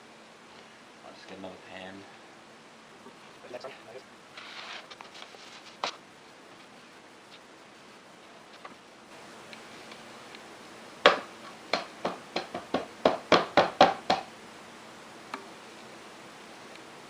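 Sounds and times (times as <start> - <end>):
sieve tapping against pan: 11.1 - 14.3.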